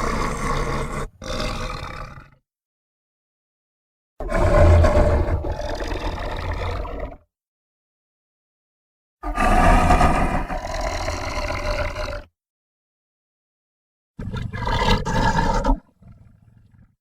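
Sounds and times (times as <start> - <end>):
dragon roar: 0.0 - 2.4, 4.2 - 7.2, 9.2 - 12.3.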